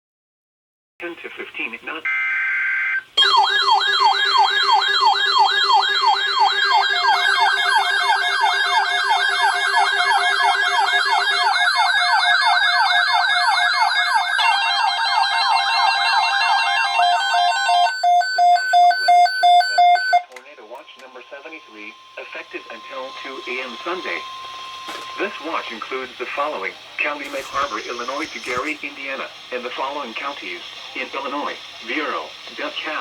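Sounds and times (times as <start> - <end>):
siren-like alert wails: 2.4 - 25.7
buzzing data noise: 20.1 - 30.4
steady low tone: 20.4 - 26.3
fast pulsed beeps: 21.1 - 25.6, 27.3 - 28.8.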